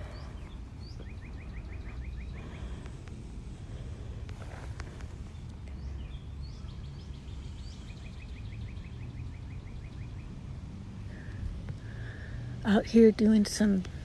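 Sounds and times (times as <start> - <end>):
rapid bird chirps: 0.0 - 3.0, 5.2 - 12.5
birds calling: 0.0 - 14.0.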